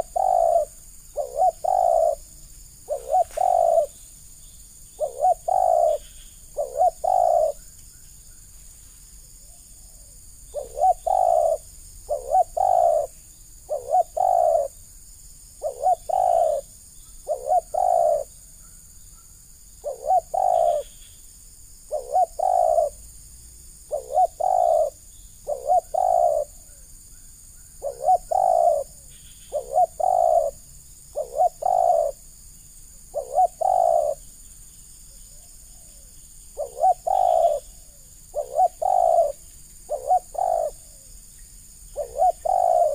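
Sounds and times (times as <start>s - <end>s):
dove cooing: 0.0s - 4.0s, 5.0s - 7.7s, 9.4s - 14.8s, 15.6s - 18.3s, 19.8s - 21.0s, 21.9s - 23.0s, 23.9s - 26.9s, 27.8s - 32.2s, 33.1s - 34.2s, 35.3s - 41.1s, 41.9s - 42.9s.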